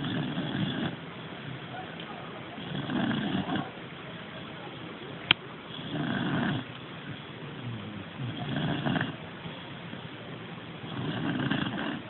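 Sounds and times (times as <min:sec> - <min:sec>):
low rough snoring: 0:00.0 - 0:01.0, 0:02.6 - 0:03.7, 0:05.7 - 0:10.1, 0:10.8 - 0:12.0.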